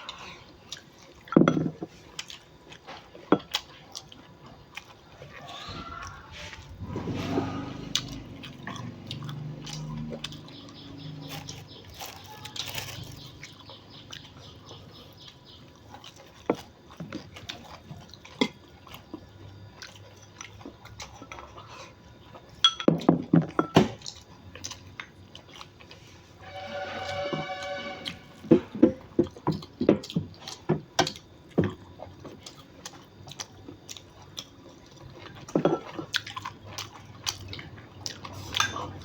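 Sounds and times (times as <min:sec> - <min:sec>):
chewing crunchy food: 0:00.0 - 0:26.2, 0:29.2 - 0:39.0
utensils clinking on dishes: 0:38.4 - 0:39.0.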